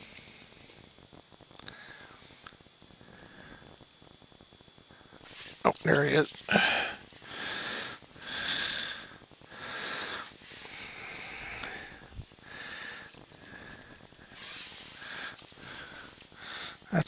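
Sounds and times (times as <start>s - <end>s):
person breathing through nose: 1.6s - 3.7s, 6.5s - 16.9s.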